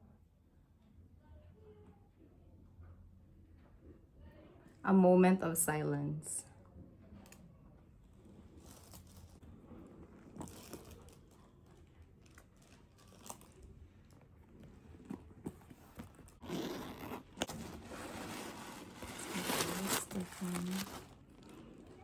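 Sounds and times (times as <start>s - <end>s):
packaging crinkling and rustling: 10.0s - 16.5s, 17.1s - 22.0s.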